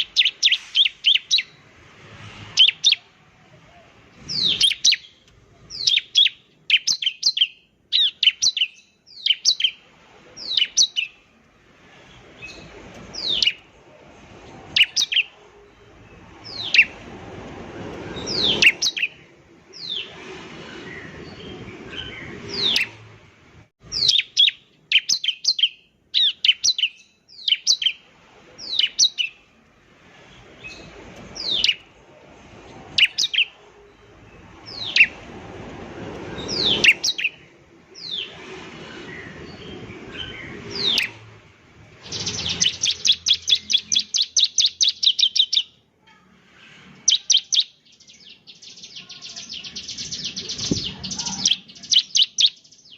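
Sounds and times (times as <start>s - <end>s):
bird singing sharp high notes: 0.0s - 1.6s.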